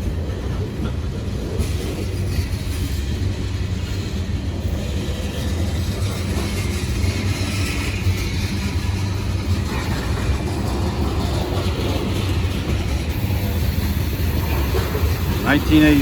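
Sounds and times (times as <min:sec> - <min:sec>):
freight train rumbling on rails: 0:00.0 - 0:16.0.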